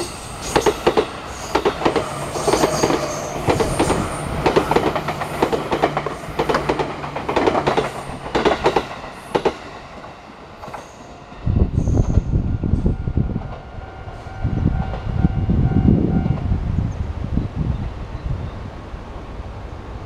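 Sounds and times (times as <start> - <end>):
train wheels clacking over joints: 0.0 - 11.0.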